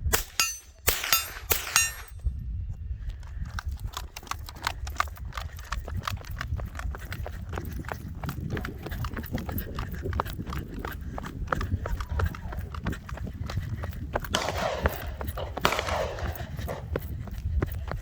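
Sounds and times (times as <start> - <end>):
rifle shot: 0.0 - 2.1, 14.3 - 17.0
steel target ringing: 0.1 - 2.2
running footsteps: 3.0 - 18.0.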